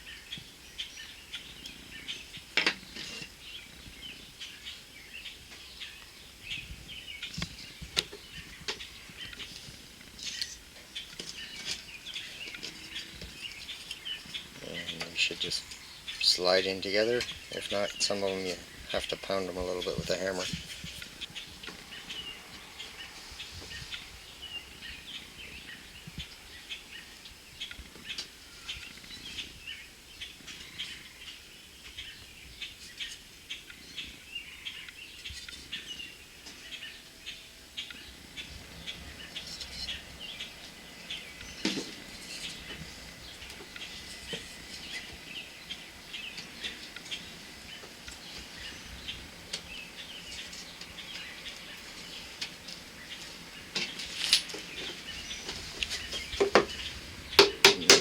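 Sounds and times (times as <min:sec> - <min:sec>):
small birds chirping: 0:00.0 - 0:58.0.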